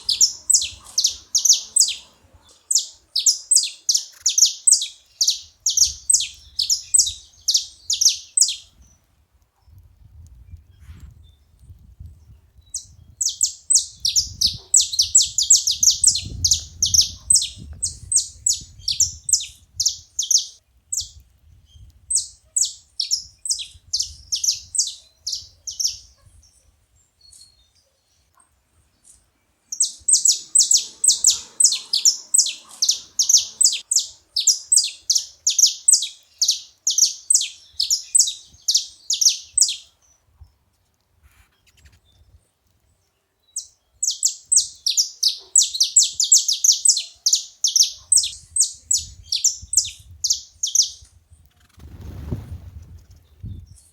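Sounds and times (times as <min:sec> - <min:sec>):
finches singing: 0:00.0 - 0:08.8, 0:12.8 - 0:21.1, 0:22.1 - 0:26.5, 0:29.1 - 0:39.9, 0:43.6 - 0:51.0.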